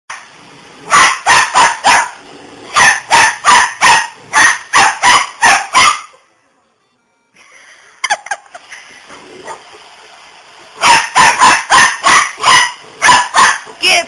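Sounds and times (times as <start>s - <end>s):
puppy barking: 0.1s - 6.2s, 9.4s - 9.7s, 10.8s - 14.0s.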